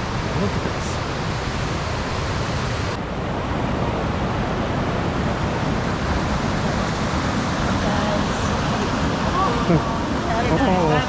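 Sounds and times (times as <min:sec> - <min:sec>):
rushing water of rapids: 0:00.0 - 0:11.0.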